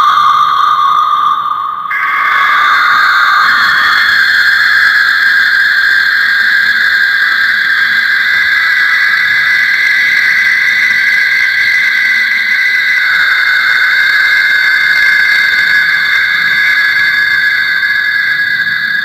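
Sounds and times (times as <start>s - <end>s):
high-pitched synthetic squealing tone: 1.9s - 4.6s.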